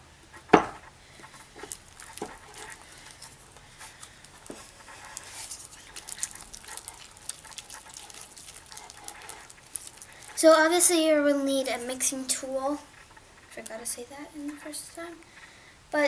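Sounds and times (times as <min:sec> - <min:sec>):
tool tapping bowl: 0:00.6 - 0:00.8
sticky slime crackling: 0:01.1 - 0:12.8.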